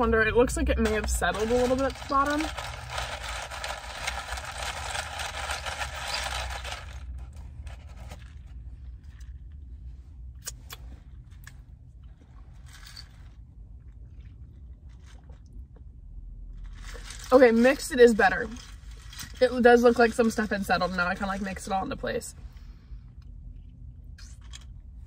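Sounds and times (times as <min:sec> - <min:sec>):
straw stirring ice: 0:00.4 - 0:08.4.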